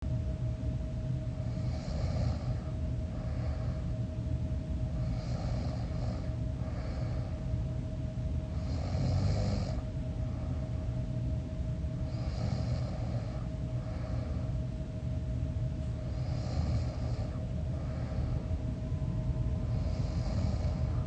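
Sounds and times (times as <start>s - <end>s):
steady low hum: 0.0s - 21.0s
person snoring: 1.5s - 3.8s, 5.0s - 7.3s, 8.6s - 9.8s, 12.1s - 14.5s, 16.0s - 18.5s, 19.7s - 21.0s.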